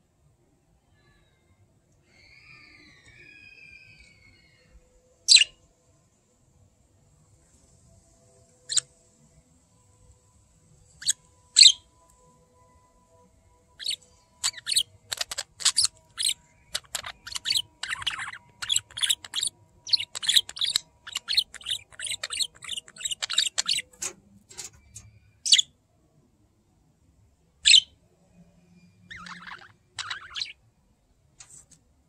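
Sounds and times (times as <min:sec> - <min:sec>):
budgerigars chirping: 0:11.0 - 0:11.9, 0:13.8 - 0:24.1, 0:25.4 - 0:25.6, 0:27.6 - 0:27.9, 0:29.1 - 0:30.6.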